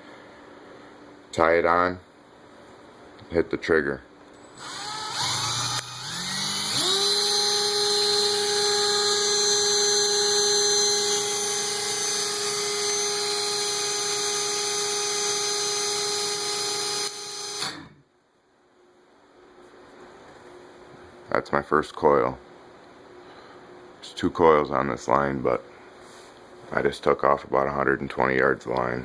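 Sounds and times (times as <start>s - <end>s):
electric drill motor whine: 4.4s - 18.0s.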